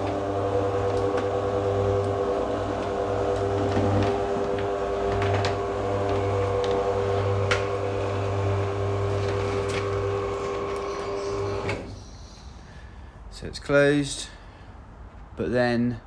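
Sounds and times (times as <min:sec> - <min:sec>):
garage door opener motor humming: 0:00.0 - 0:12.0.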